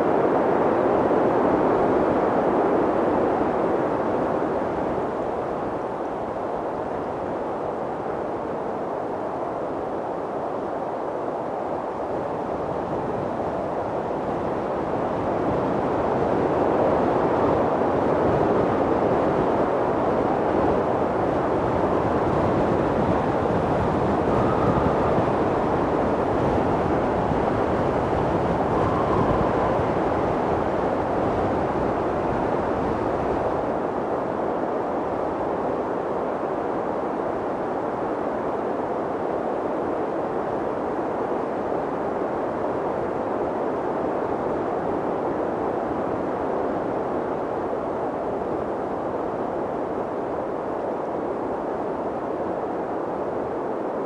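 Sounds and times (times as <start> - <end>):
strong wind blowing: 0.0 - 54.0.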